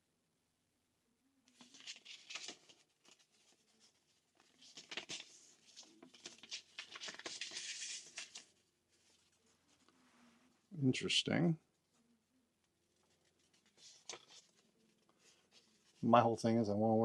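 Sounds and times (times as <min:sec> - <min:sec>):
paper rustling and crinkling: 0:01.6 - 0:10.0, 0:12.9 - 0:16.0.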